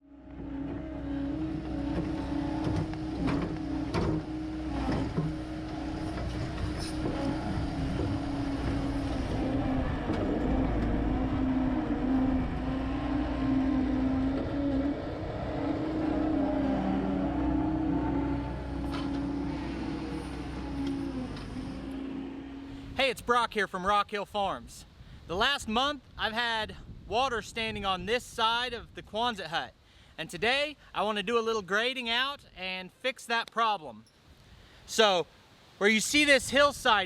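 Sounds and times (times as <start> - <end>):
diesel engine running under load: 0.0 - 23.0.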